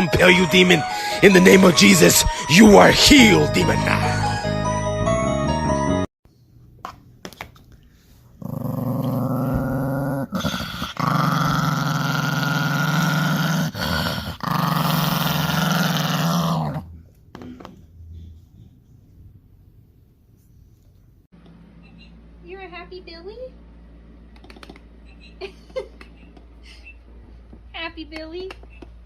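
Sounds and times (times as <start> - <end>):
dog growling: 8.4 - 17.0.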